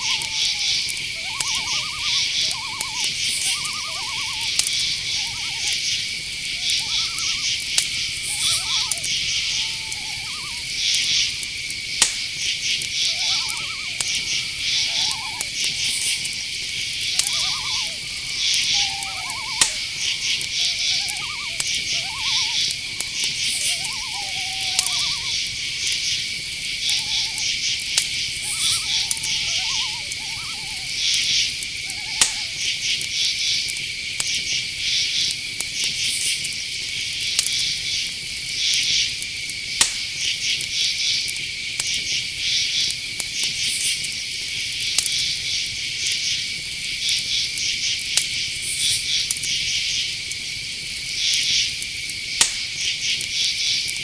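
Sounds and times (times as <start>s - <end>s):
sharp clicks: 0.0s - 32.7s
owl calls: 0.0s - 33.0s
rapid pulsing chirping: 0.0s - 33.0s
insects trilling: 0.0s - 54.0s.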